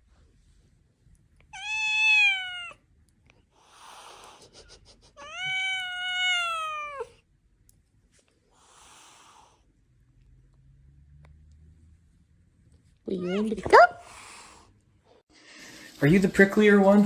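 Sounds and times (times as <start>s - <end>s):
cat meowing: 1.5s - 2.8s, 5.2s - 7.2s
breathy hissing: 8.5s - 9.7s.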